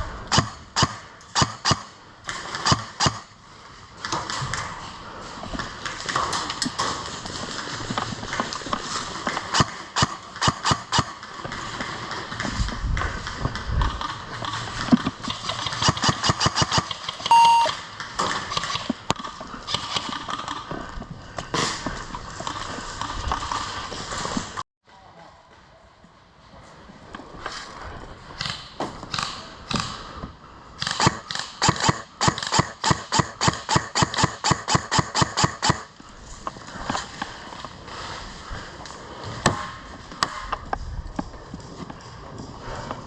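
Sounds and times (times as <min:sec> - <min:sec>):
short electronic beep: 0:17.3 - 0:17.8.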